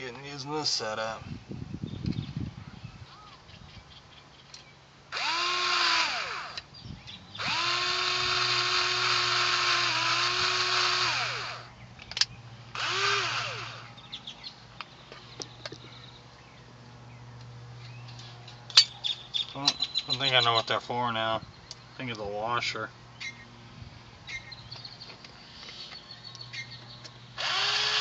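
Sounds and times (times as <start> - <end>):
power drill driving screws: 5.1 - 6.7, 7.4 - 11.7, 12.8 - 13.9, 27.4 - 28.0.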